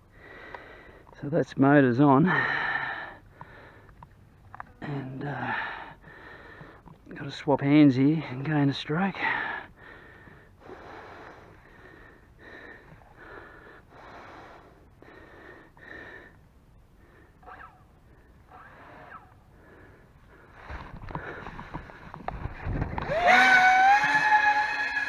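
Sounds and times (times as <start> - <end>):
quick rhythmic breaths: 0.0 - 1.2, 2.3 - 4.4, 5.4 - 7.1, 9.2 - 22.8
low rumbling thumps: 20.6 - 23.2
electric motors whining: 22.5 - 25.0.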